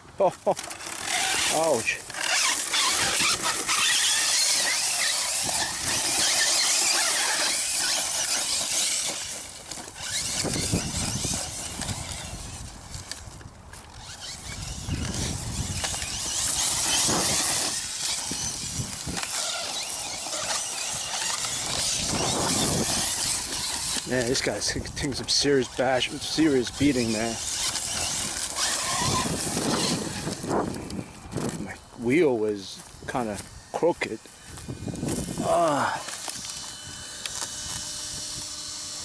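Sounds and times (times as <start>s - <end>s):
tires on gravel: 0.0s - 38.0s
electric motor whining: 0.5s - 39.0s.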